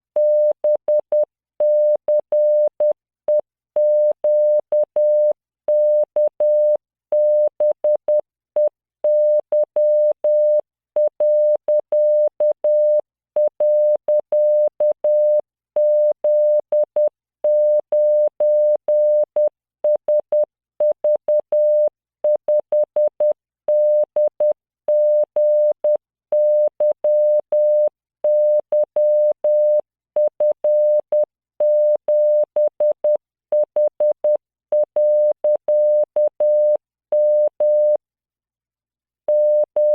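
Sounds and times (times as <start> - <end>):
morse code tone: 22.7 - 38.0, 39.3 - 39.9.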